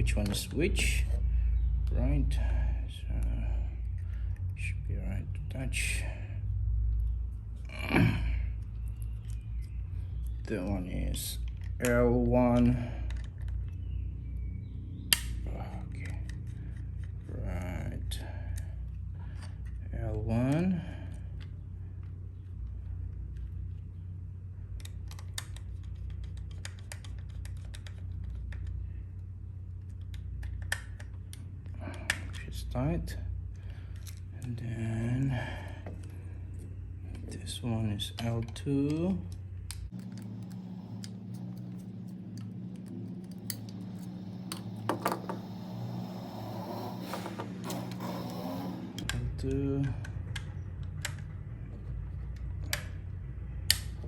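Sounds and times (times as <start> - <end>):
low steady hum: 28.2 - 54.0
screwdriver clicking on terminal: 39.7 - 49.2.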